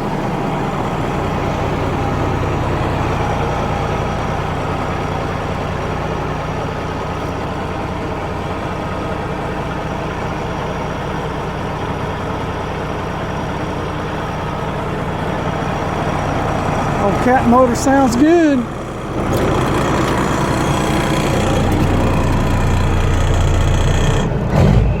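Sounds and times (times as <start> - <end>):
diesel truck engine idling: 0.0 - 25.0.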